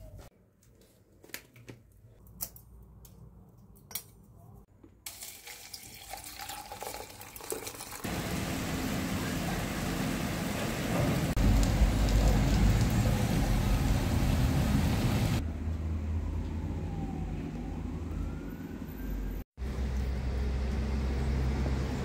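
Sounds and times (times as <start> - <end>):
tap water running into sink: 9.6 - 14.4.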